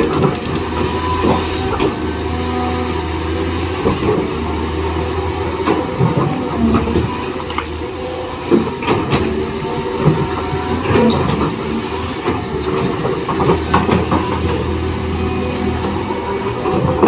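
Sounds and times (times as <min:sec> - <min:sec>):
plastic parts clicking: 0:00.0 - 0:00.8
small electric motors whirring: 0:00.0 - 0:17.0.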